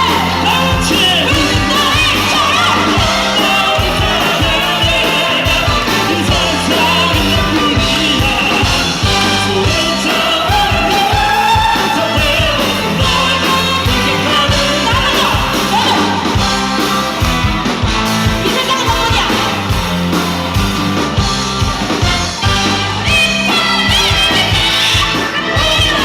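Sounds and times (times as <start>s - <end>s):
classical voices singing: 0.0s - 15.4s
big band playing: 0.0s - 26.0s.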